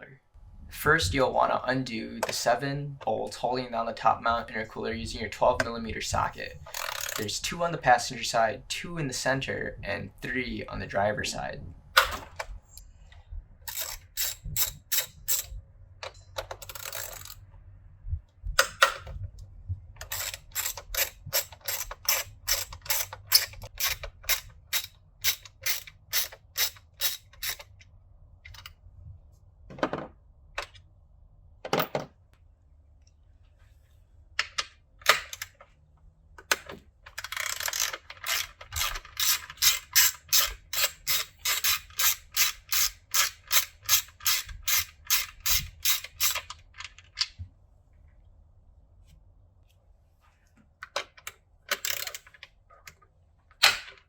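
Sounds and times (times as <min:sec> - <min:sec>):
ratchet wrench clicking: 0:06.6 - 0:07.3, 0:13.7 - 0:15.5, 0:16.4 - 0:17.4, 0:20.0 - 0:27.7, 0:37.2 - 0:46.5, 0:51.7 - 0:52.2.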